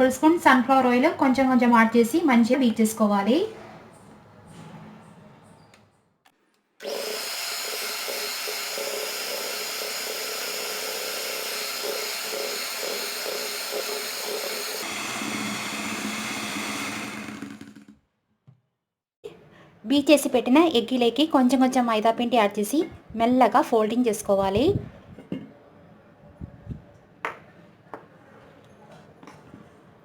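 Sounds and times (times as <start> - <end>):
electric hand mixer whirring: 6.8 - 17.9.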